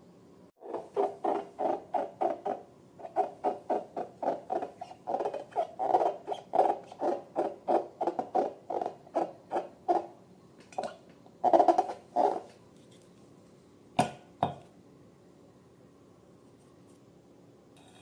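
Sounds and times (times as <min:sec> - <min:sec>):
rubber balloon squeaking: 0:00.6 - 0:10.1.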